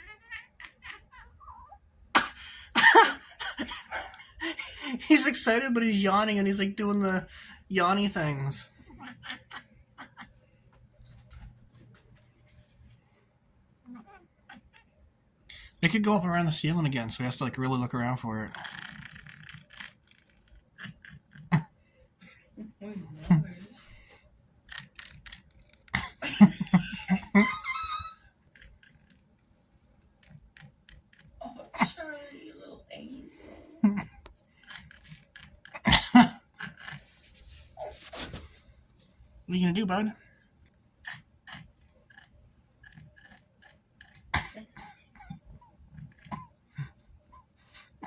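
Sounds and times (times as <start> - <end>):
cat chattering: 0.0 - 1.8, 13.9 - 15.0.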